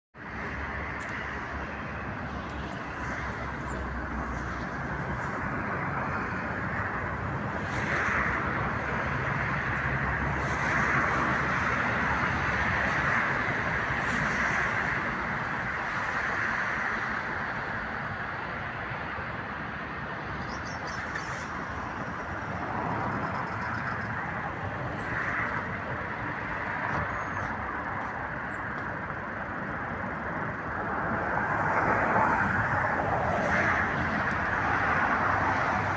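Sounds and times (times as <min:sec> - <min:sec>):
traffic noise: 0:00.2 - 0:35.9.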